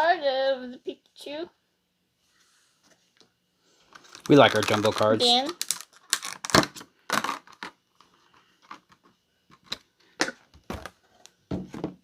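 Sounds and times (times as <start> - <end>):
cardboard packaging crinkling and knocking: 4.0 - 12.0.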